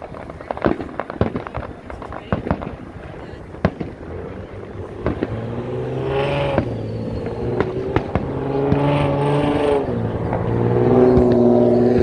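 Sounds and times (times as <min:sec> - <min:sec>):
firework bangs: 0:00.0 - 0:12.0
vehicle engine revving: 0:03.5 - 0:12.0.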